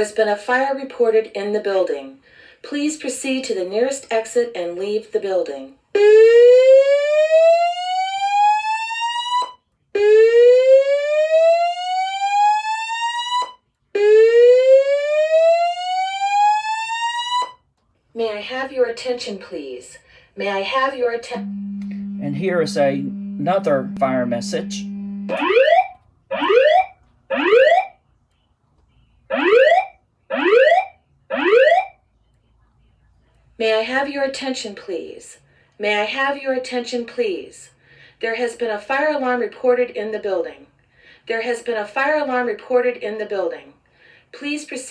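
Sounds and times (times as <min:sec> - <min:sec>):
rising whoop alarm tone: 0:21.4 - 0:22.4.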